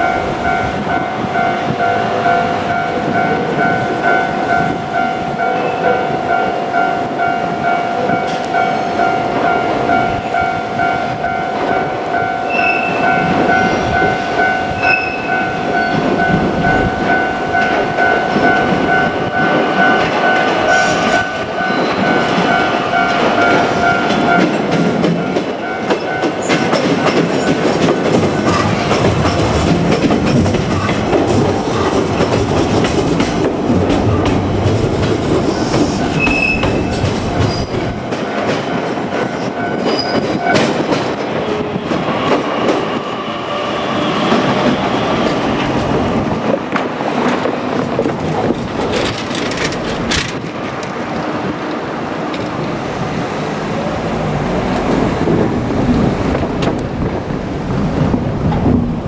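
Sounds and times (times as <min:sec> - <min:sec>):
level crossing warning bell: 0:00.0 - 0:31.1, 0:31.8 - 0:41.8
train wheels clattering over rail joints: 0:14.8 - 0:59.0.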